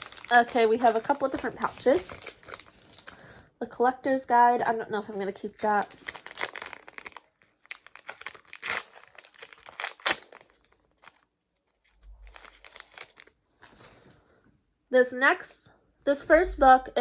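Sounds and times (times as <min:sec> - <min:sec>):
plastic pouches crinkling and tearing: 0:00.0 - 0:03.5, 0:04.6 - 0:11.2, 0:11.8 - 0:14.2.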